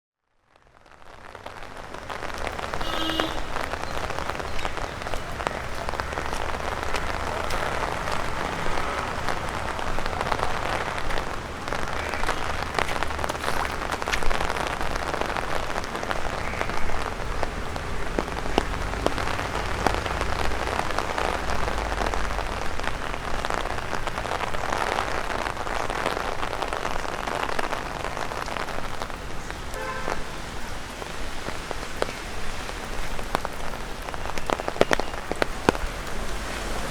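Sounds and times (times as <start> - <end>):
rain drumming on an umbrella: 0.2 - 36.9
drops tapping on umbrella: 32.9 - 36.4.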